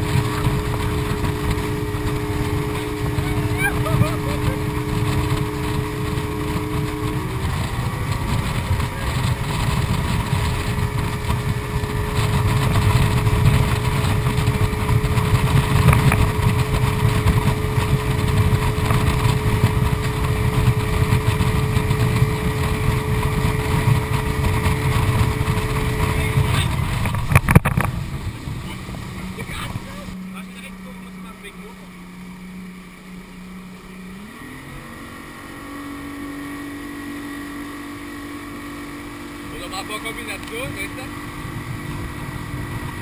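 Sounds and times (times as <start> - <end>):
heavy low rumble: 0.0 - 43.0
motorboat engine running: 0.0 - 43.0.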